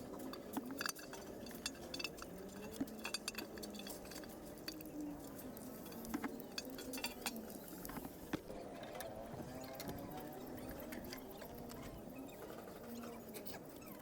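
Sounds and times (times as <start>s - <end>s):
metal tools clinking on engine parts: 0.0s - 11.6s.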